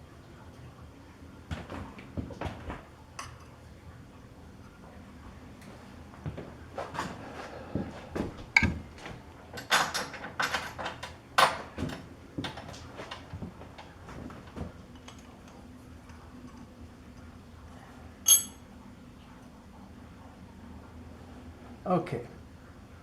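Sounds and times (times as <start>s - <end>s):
faint steady hum: 0.0s - 23.0s
sharp ringing metallic clink: 18.2s - 18.6s.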